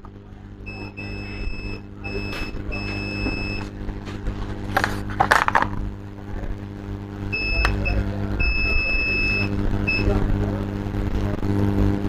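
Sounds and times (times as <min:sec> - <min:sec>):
electrical hum: 0:00.0 - 0:12.0
multimeter beeps: 0:00.7 - 0:03.7, 0:07.3 - 0:10.2.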